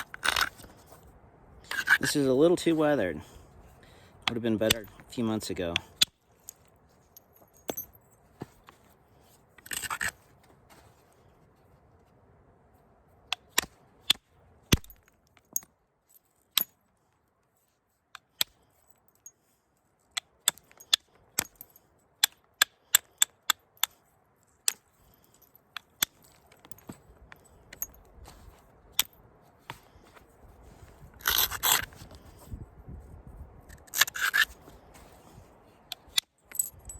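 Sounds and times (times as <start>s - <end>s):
scrape on stone: 33.8s - 35.5s.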